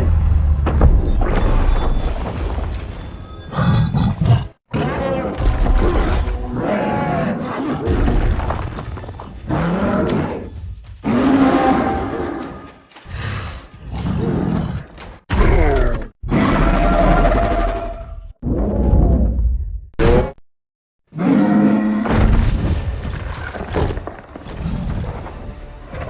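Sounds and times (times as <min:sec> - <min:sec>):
creature roars and growls: 0:09.4 - 0:12.6, 0:13.9 - 0:19.4, 0:21.2 - 0:22.4.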